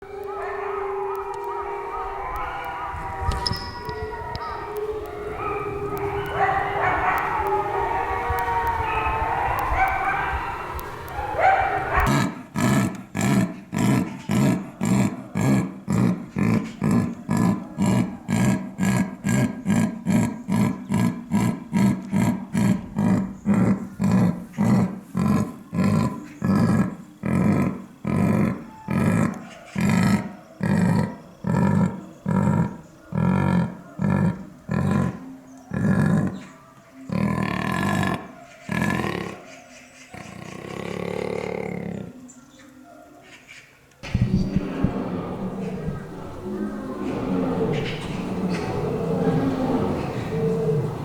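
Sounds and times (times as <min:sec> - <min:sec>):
big cat roaring grunts: 0:10.8 - 0:39.5, 0:40.1 - 0:42.2, 0:44.0 - 0:51.0.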